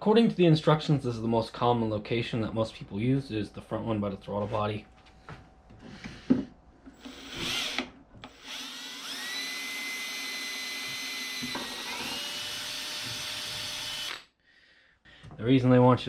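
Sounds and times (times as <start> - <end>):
power drill whine: 6.9 - 14.3.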